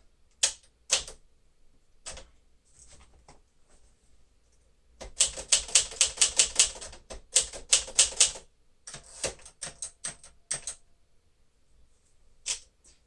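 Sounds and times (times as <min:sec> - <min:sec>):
manual typewriter keystrokes: 0:00.4 - 0:01.2, 0:05.0 - 0:10.8.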